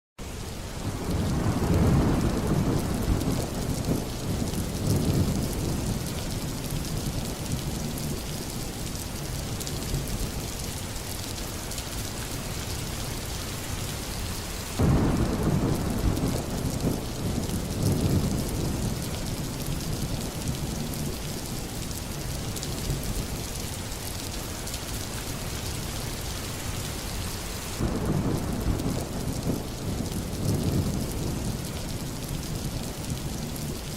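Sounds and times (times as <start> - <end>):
heavy rain: 0.2 - 33.9
rolling thunder: 0.8 - 10.4, 14.8 - 21.4, 27.8 - 33.9.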